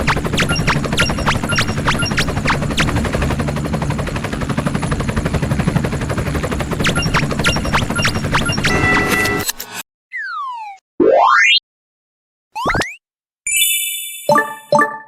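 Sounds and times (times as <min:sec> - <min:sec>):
falling laser zaps: 0:00.0 - 0:03.4, 0:06.8 - 0:08.8
machine-gun-like clatter: 0:00.0 - 0:03.5, 0:06.5 - 0:09.3
short beeps: 0:06.9 - 0:09.5.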